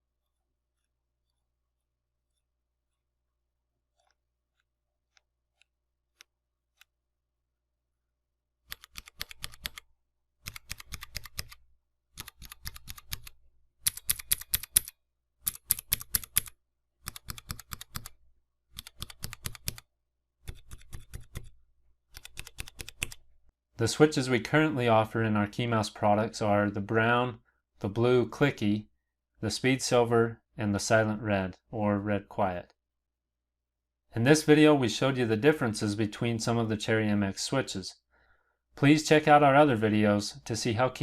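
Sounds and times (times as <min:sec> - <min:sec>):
mechanical keyboard typing: 0:08.7 - 0:11.6, 0:12.2 - 0:14.9, 0:15.5 - 0:19.9, 0:22.1 - 0:23.2.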